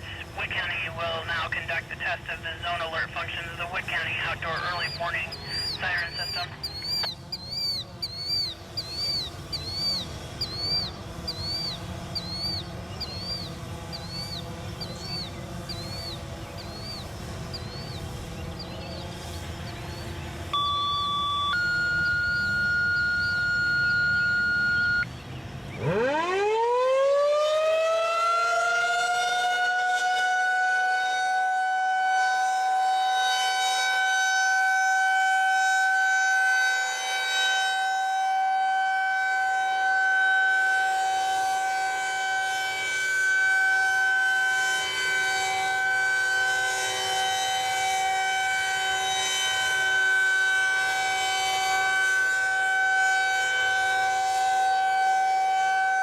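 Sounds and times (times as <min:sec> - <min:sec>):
warning siren winding up: 0:04.6 - 0:17.0, 0:20.5 - 0:25.1, 0:25.8 - 0:56.0.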